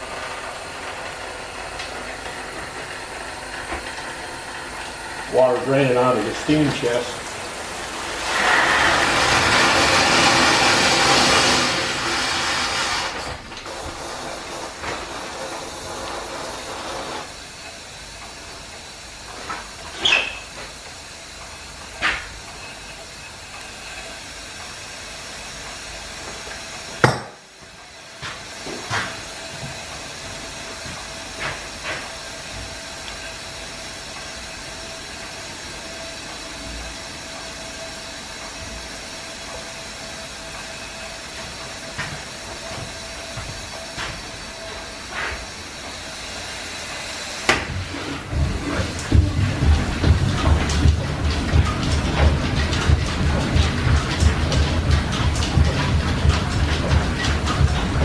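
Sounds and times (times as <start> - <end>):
steam hissing from drain cocks: 0.0 - 58.0
scattered knocks: 47.5 - 58.0.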